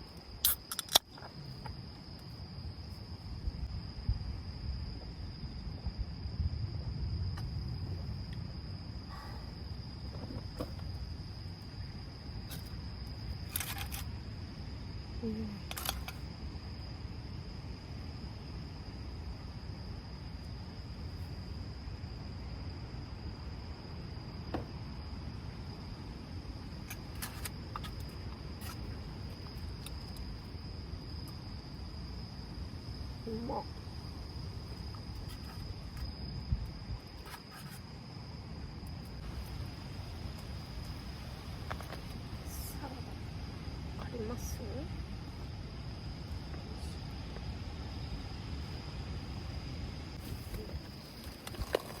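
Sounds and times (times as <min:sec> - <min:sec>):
crickets trilling: 0:00.0 - 0:52.0
wind rumble on microphone: 0:01.4 - 0:11.6, 0:31.8 - 0:52.0.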